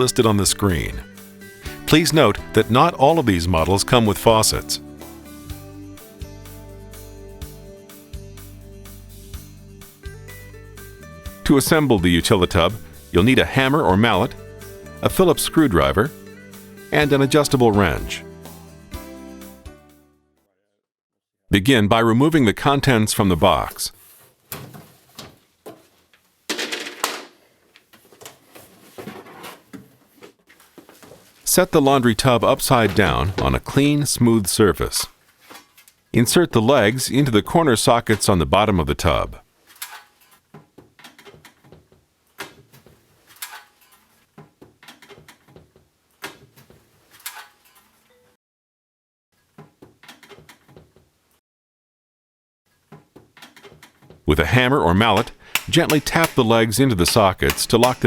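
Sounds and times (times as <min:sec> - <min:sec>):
parts knocking and clattering: 0:26.5 - 0:27.4, 0:55.1 - 0:58.0.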